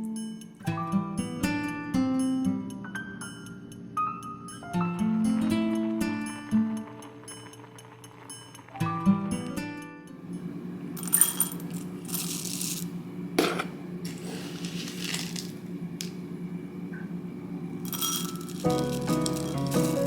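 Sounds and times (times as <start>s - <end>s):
steady low hum: 10.2s - 20.0s
kitchen items rattling and clinking: 11.0s - 15.6s, 17.9s - 20.0s.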